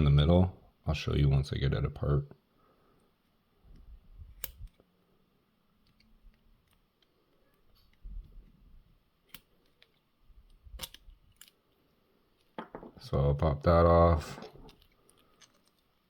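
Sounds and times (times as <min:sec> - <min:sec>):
clicks of small parts: 0:04.4 - 0:04.9, 0:09.2 - 0:11.8, 0:14.4 - 0:16.0.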